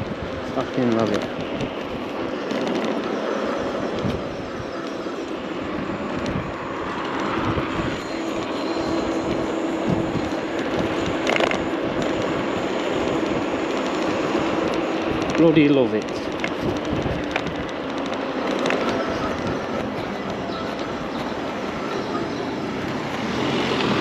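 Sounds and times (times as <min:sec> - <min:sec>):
wind and road noise: 0:00.0 - 0:24.0
electric motor whine: 0:03.0 - 0:15.8.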